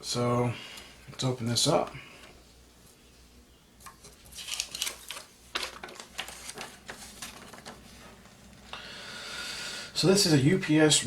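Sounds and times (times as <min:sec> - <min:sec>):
packaging crackling and rustling: 0:04.2 - 0:08.4.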